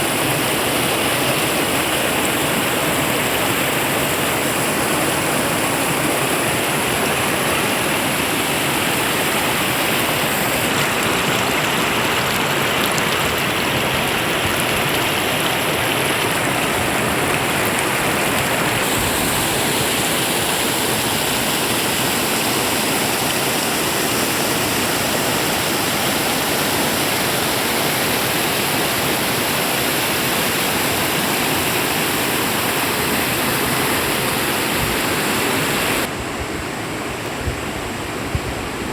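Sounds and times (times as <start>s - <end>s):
river water rushing: 0.0s - 38.9s.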